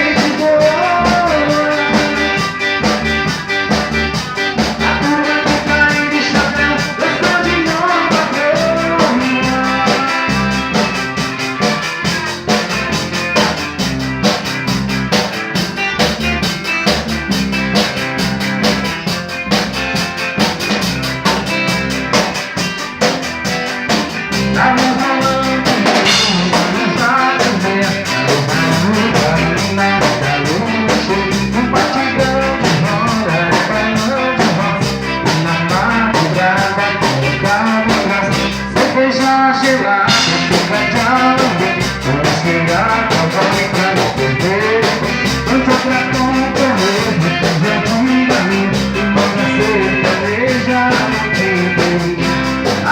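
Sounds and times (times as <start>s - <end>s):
band playing: 0.0s - 52.9s
drum kit: 0.0s - 52.9s
guitar: 0.0s - 52.9s.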